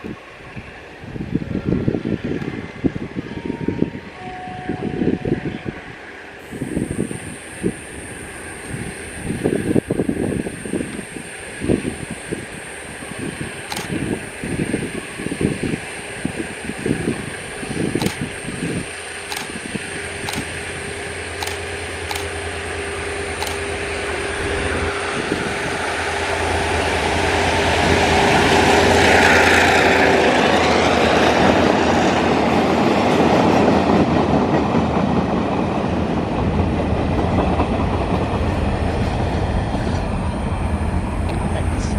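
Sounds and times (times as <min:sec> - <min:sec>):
diesel locomotive passing: 0:00.0 - 0:41.9
freight wagons rumbling on rails: 0:04.5 - 0:41.9.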